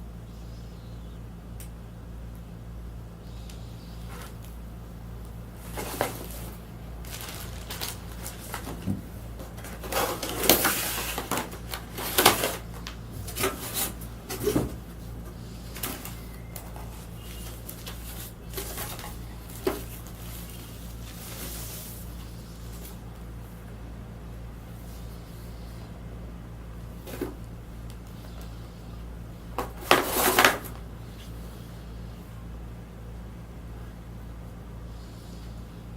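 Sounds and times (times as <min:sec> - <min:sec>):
steady low hum: 0:00.0 - 0:35.9
packaging rustling and clicking: 0:05.6 - 0:21.7.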